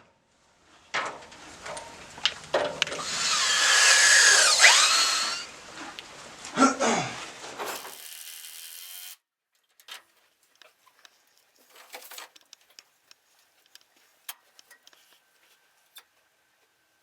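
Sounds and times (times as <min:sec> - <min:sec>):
power drill running: 0:03.0 - 0:05.5, 0:07.7 - 0:09.2
faint clicks and knocks: 0:09.6 - 0:16.8.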